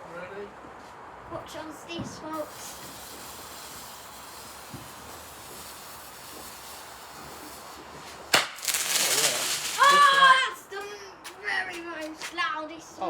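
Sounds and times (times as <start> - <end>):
faint steady hiss: 1.3 - 13.0
loud firework bang: 4.4 - 10.5.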